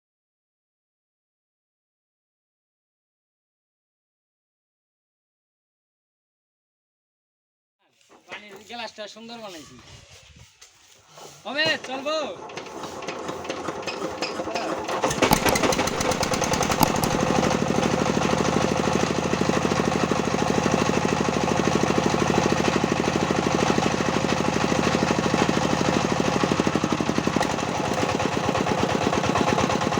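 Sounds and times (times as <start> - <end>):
diesel engine knocking: 12.3 - 29.9.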